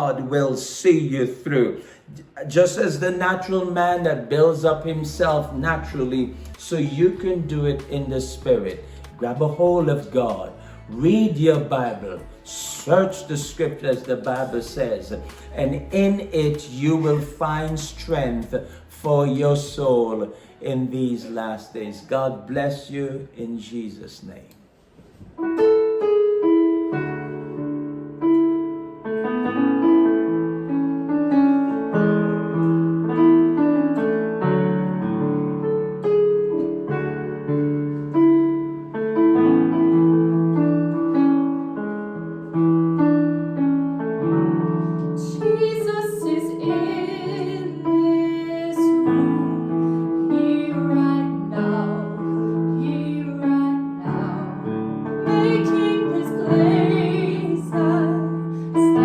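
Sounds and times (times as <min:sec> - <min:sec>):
slow piano music: 0:00.0 - 0:23.8, 0:25.0 - 0:59.0
person singing: 0:45.2 - 0:54.6, 0:55.2 - 0:59.0.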